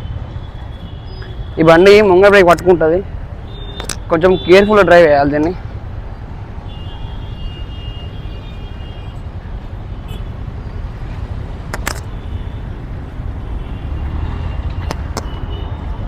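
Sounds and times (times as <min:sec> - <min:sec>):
sharp clicks: 0:03.8 - 0:04.1, 0:11.7 - 0:12.1, 0:14.8 - 0:15.4.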